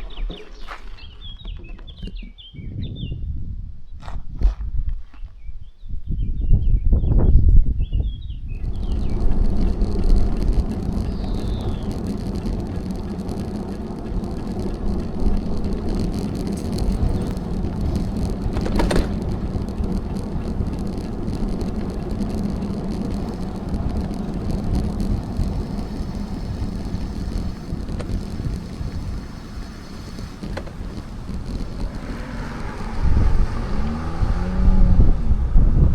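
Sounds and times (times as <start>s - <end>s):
bicycle tyre and drivetrain noise: 0.0s - 2.0s, 8.2s - 35.6s
wind on microphone: 0.0s - 35.9s
steady low hum: 8.4s - 35.8s.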